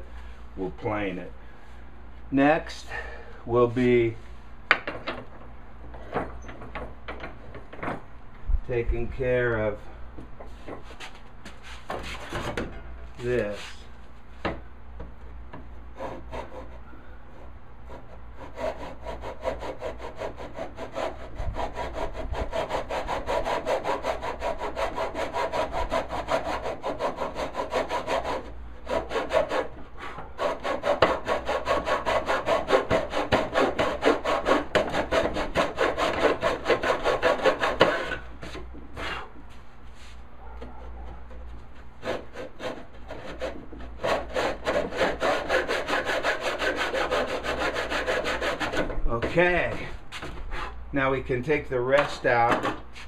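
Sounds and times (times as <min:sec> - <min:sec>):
hand saw cutting wood: 0:15.9 - 0:16.8, 0:17.4 - 0:39.3, 0:42.0 - 0:50.8.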